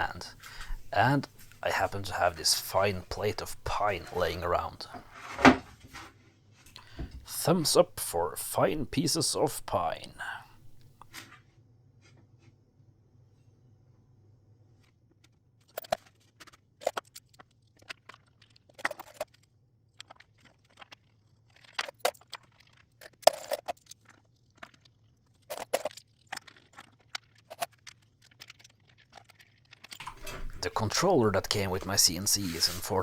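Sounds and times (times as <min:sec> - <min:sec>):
faint low hum: 0:30.0 - 0:33.0.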